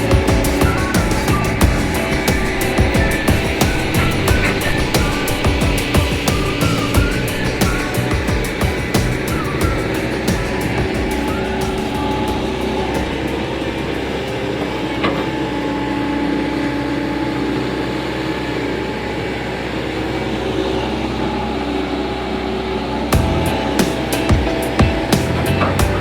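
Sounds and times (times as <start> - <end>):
excavator diesel engine running: 0.0 - 17.7.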